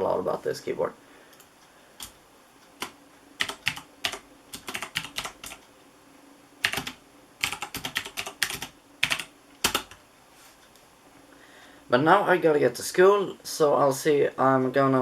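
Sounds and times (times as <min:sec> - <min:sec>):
clicky mechanical keyboard typing: 0:02.8 - 0:05.6, 0:06.6 - 0:10.0.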